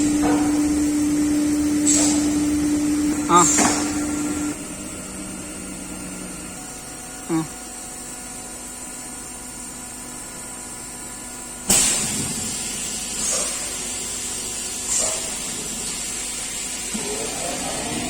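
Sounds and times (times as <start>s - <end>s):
rush of air and machine noise: 0.0s - 7.0s, 11.6s - 18.0s
air hissing: 1.7s - 2.4s.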